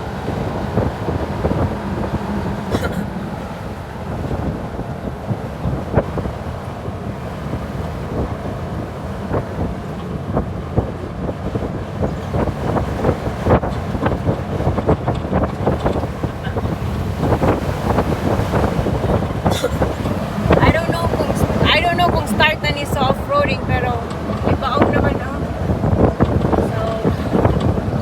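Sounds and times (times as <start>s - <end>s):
vehicle engine and tyres rumbling: 0.0s - 28.0s
wind buffeting microphone: 0.0s - 28.0s
knocks and rattles from bumps: 9.3s - 23.1s.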